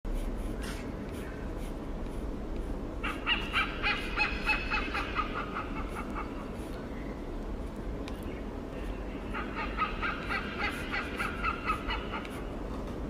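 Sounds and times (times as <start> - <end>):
hornbill cawing: 3.0 - 6.5, 9.3 - 12.5.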